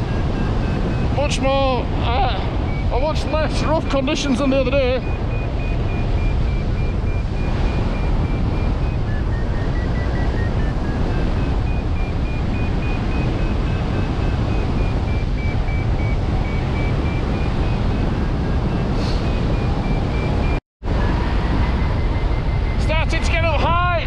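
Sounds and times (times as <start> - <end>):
variometer beeping rapidly: 0.0 - 20.6
wind rushing over microphone: 0.0 - 24.0.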